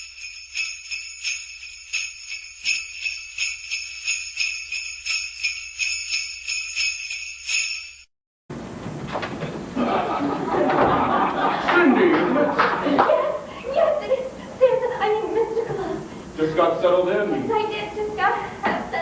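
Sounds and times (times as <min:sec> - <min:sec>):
sleigh bells shaken: 0:00.0 - 0:08.1.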